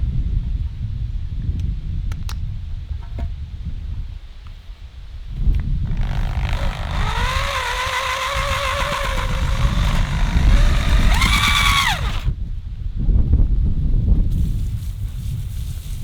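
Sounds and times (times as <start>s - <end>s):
engine running and revving: 6.0s - 12.3s.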